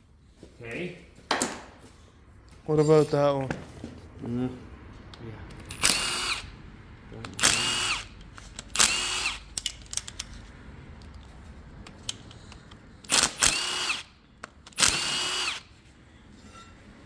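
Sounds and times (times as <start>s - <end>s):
cordless power driver spinning: 5.6s - 6.6s, 7.3s - 10.2s, 12.1s - 14.1s, 14.7s - 15.7s
small tool clicks: 7.3s - 10.3s, 11.9s - 15.6s.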